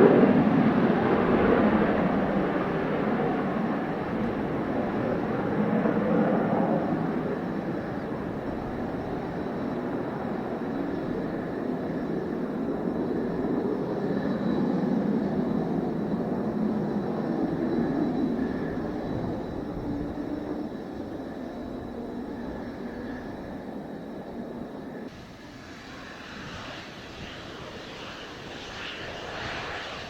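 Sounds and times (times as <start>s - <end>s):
jet engine roar: 0.0s - 30.0s.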